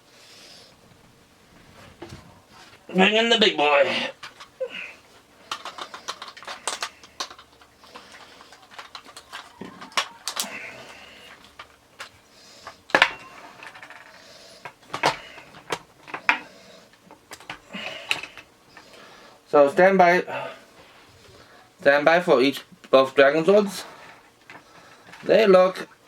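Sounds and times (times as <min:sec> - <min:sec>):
toy figures clicking and knocking: 0:03.9 - 0:19.0.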